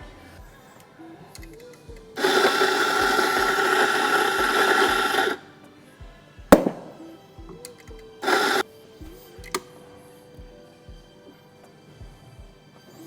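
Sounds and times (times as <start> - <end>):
espresso grinder grinding coffee: 2.2 - 5.4, 8.2 - 8.6.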